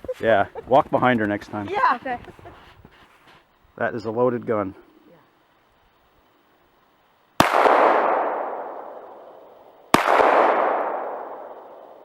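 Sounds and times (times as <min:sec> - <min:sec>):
pistol shots with echo: 0:07.4 - 0:09.1, 0:09.9 - 0:11.9.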